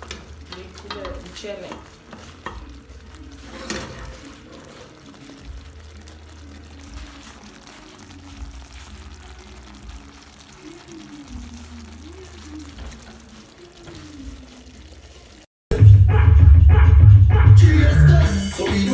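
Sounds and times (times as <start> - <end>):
liquid pouring and trickling: 0.0 - 15.5.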